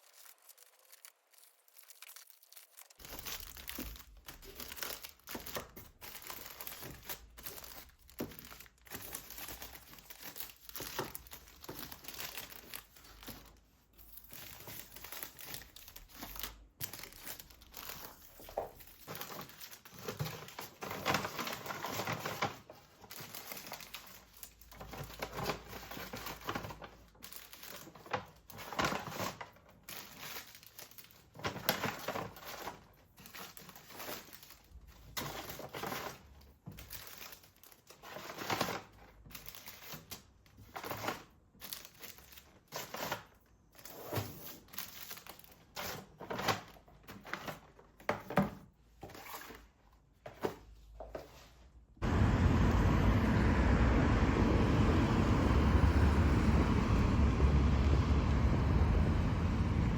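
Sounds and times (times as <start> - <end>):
packaging tearing: 0.0 - 47.8
packaging crinkling and rustling: 0.0 - 52.0.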